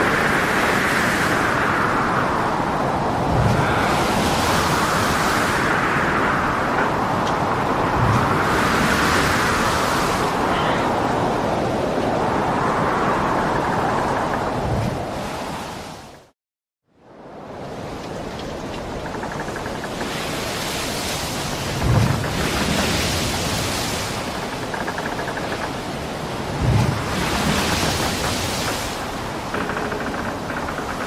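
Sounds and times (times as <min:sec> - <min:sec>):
wind and heavy waves rushing: 0:00.0 - 0:31.0
waves breaking thuds: 0:18.0 - 0:31.0.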